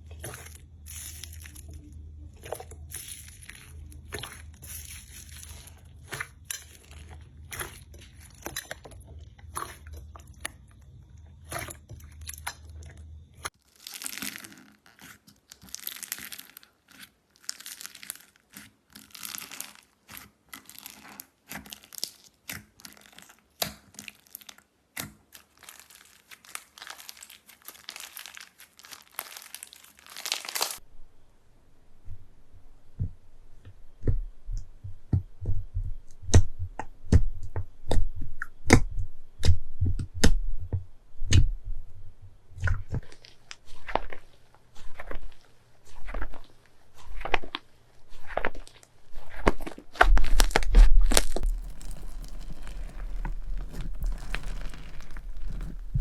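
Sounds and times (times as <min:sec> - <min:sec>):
low hum: 0:00.0 - 0:13.4
slime crackling and popping: 0:00.1 - 0:30.8, 0:42.6 - 0:56.0.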